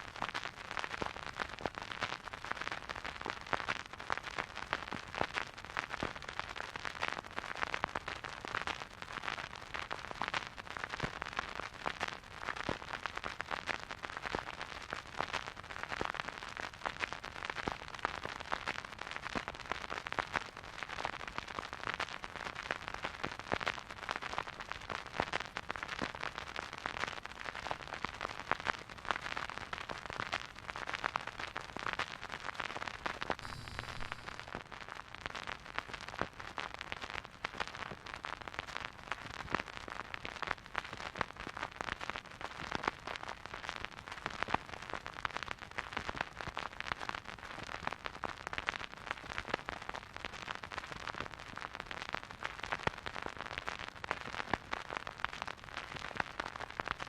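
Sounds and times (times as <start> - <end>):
vinyl record crackle: 0.0 - 57.0
faint hiss: 33.4 - 34.6.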